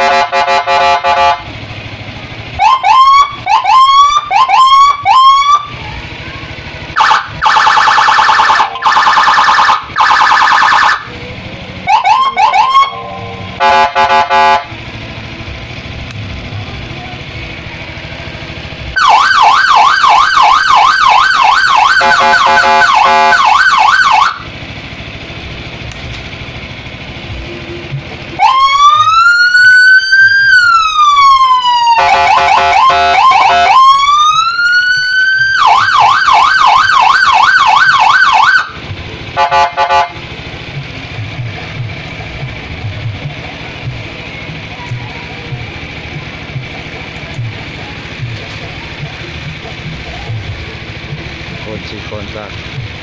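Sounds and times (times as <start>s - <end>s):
electronic police siren: 2.6s - 5.8s, 6.9s - 11.1s, 11.8s - 14.7s, 19.0s - 24.5s, 28.4s - 38.8s.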